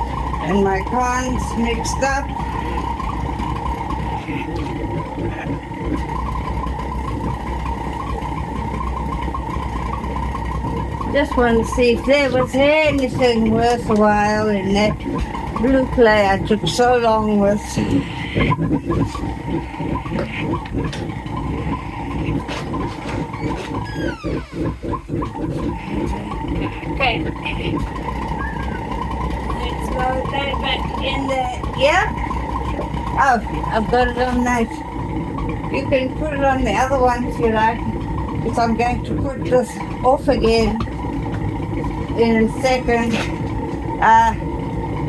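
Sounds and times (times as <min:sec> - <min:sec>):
gas furnace rushing hum: 0:00.0 - 0:45.0
high gliding squeaks: 0:21.4 - 0:27.0, 0:27.6 - 0:29.1.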